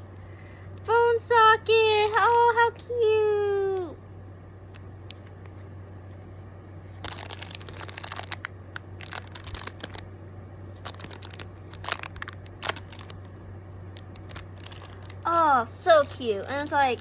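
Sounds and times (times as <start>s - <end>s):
faint low hum: 0.0s - 17.0s
packaging crinkling and rustling: 2.0s - 2.5s, 6.9s - 10.1s, 10.7s - 13.4s, 14.0s - 17.0s.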